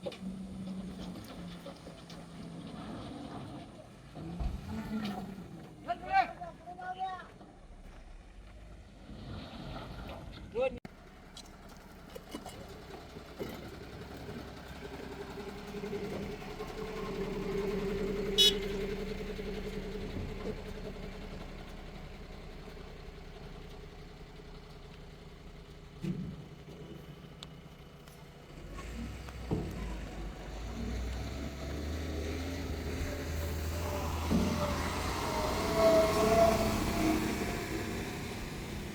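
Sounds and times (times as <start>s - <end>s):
diesel engine running: 10.9s - 38.9s.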